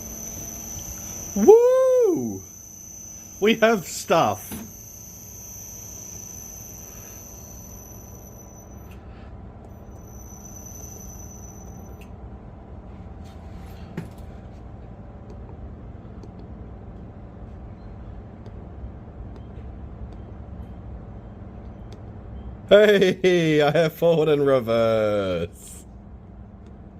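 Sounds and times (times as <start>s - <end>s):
grinder motor hum: 0.0s - 9.0s
high motor whine: 0.0s - 12.6s.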